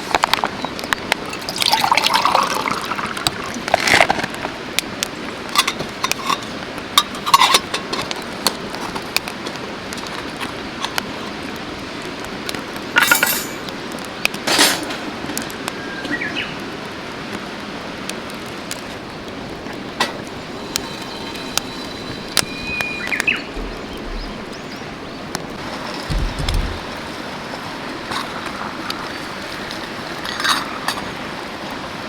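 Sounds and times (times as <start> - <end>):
camp gear clinking: 5.5 - 11.4, 13.0 - 13.7, 26.1 - 27.2
bird calls: 20.4 - 27.0
mountain stream rushing: 23.1 - 32.0.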